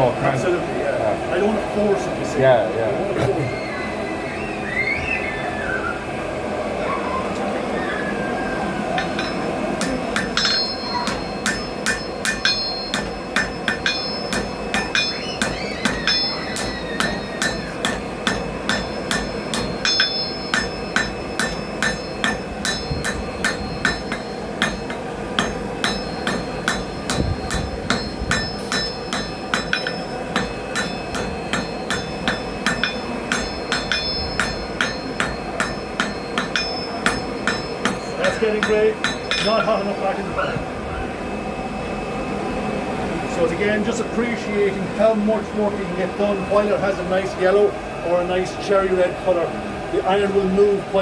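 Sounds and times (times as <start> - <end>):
hammer striking iron on anvil: 9.0 - 40.2.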